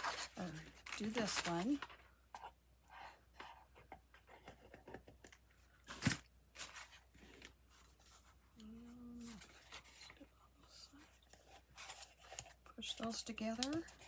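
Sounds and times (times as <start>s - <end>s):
paper rustling: 0.0s - 2.0s, 5.9s - 8.4s, 9.2s - 14.0s.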